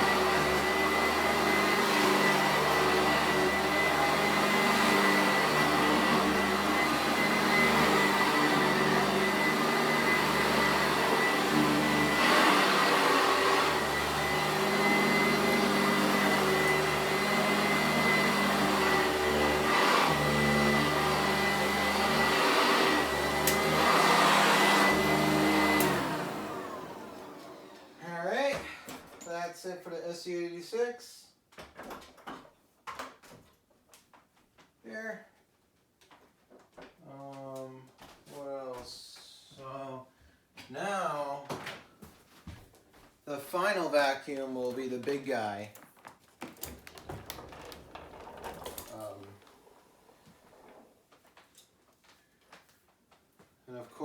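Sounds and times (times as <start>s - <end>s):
vacuum motor winding down: 0.0s - 28.0s
vacuum cleaner running: 0.0s - 28.7s, 46.6s - 51.0s.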